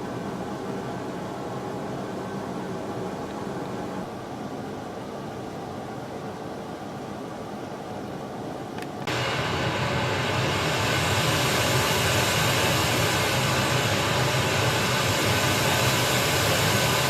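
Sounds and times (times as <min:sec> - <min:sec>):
synthesizer rushing hiss: 0:09.1 - 0:17.0.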